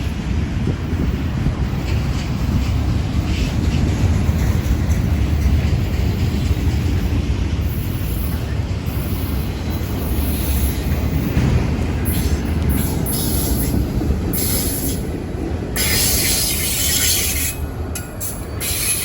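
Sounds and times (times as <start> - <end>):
freight train rumble: 0.0 - 19.0
wind buffeting microphone: 0.0 - 19.0
wheel squeal: 15.8 - 19.0.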